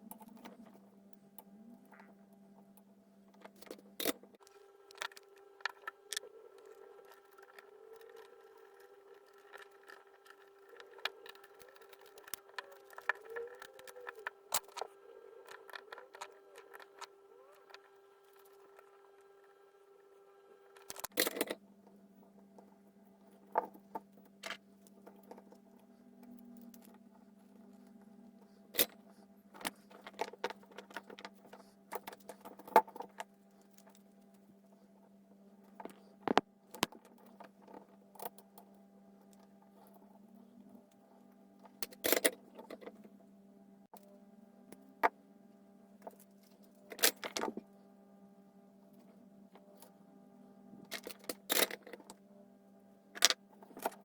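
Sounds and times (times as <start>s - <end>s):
low electrical hum: 0.0s - 54.0s
small tools clicking and rattling: 4.9s - 18.6s.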